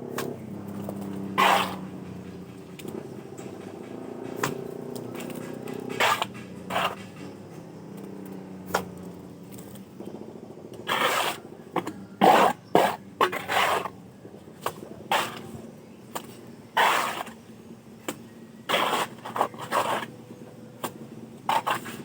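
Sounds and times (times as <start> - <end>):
steady low hum: 0.0 - 22.0
trowel scraping cement on wall: 0.1 - 7.6, 10.8 - 14.0, 14.6 - 17.4, 18.7 - 20.2, 20.8 - 22.0.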